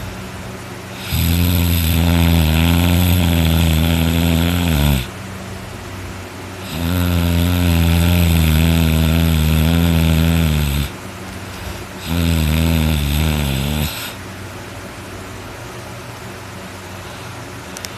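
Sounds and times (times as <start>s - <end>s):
steady background hum: 0.0s - 17.9s
person snoring loudly: 0.9s - 5.2s, 6.6s - 11.0s, 11.6s - 14.2s.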